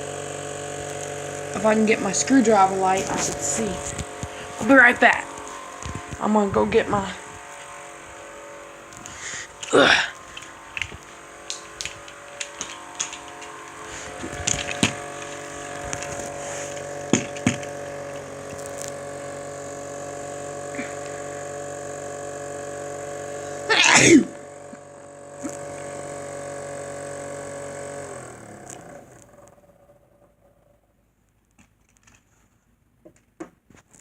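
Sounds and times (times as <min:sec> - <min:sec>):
fan motor humming: 0:00.0 - 0:30.8
handling knocks and clicks: 0:09.6 - 0:18.9.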